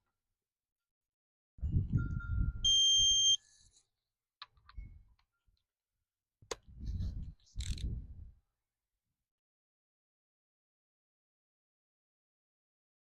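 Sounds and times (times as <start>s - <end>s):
electronic beep: 2.0s - 3.4s.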